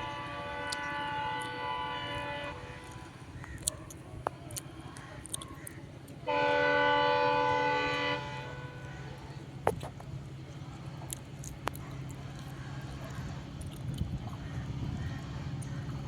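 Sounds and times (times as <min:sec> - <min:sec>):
locomotive horn blasts: 0:00.0 - 0:03.3, 0:06.3 - 0:09.3
train rumbling: 0:00.0 - 0:04.9, 0:06.2 - 0:16.0.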